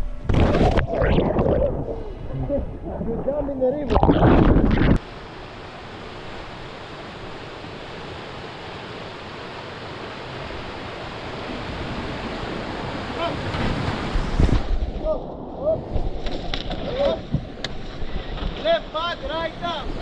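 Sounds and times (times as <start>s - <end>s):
river water rushing: 2.8s - 14.4s.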